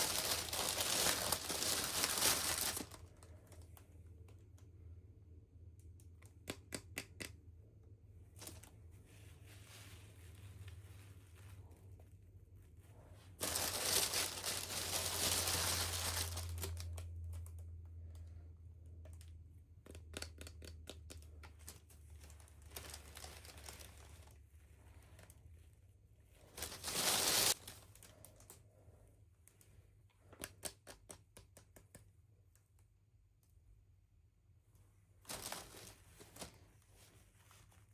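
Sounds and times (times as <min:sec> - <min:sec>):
packaging crinkling and tearing: 0:00.0 - 0:03.6, 0:13.4 - 0:17.5, 0:21.6 - 0:24.4, 0:26.5 - 0:28.6, 0:35.3 - 0:36.6
small clicks and taps: 0:05.7 - 0:07.5, 0:16.9 - 0:22.0, 0:29.4 - 0:33.6.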